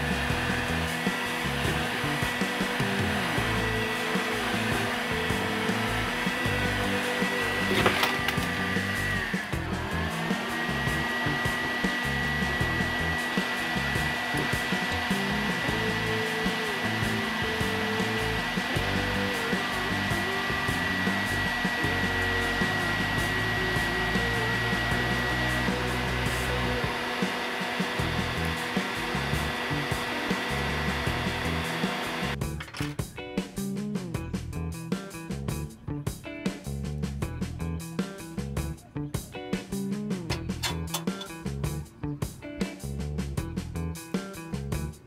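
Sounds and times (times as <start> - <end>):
heat gun blowing air: 0.0 - 32.4.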